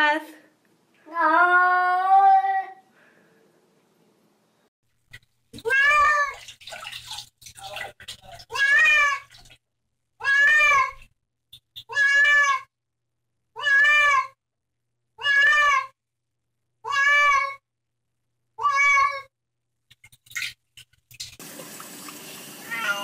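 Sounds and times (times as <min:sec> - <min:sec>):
cat meowing: 0:05.6 - 0:06.3, 0:08.5 - 0:09.3, 0:10.2 - 0:11.0, 0:11.9 - 0:12.7, 0:13.6 - 0:14.4, 0:15.2 - 0:15.9, 0:16.8 - 0:17.6, 0:18.6 - 0:19.3, 0:22.6 - 0:23.0.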